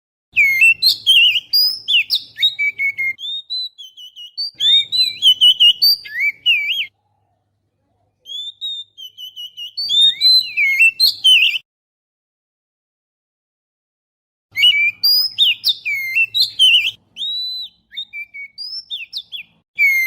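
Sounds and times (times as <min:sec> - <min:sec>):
bird song whistles and chirps: 0:00.4 - 0:07.0, 0:08.2 - 0:11.6, 0:14.5 - 0:20.0.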